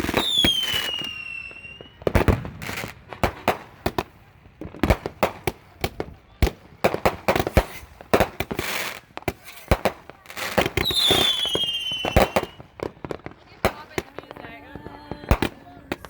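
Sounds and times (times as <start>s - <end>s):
firecrackers banging and popping: 0.0s - 16.0s
whistling firework: 0.0s - 16.0s.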